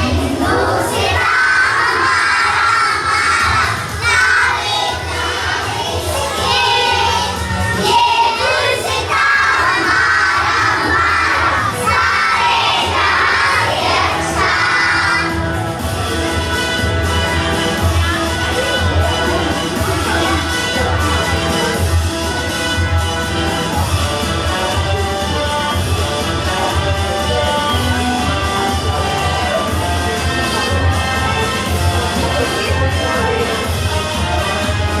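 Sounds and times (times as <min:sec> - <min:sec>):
children shouting and cheering: 0:00.0 - 0:21.9.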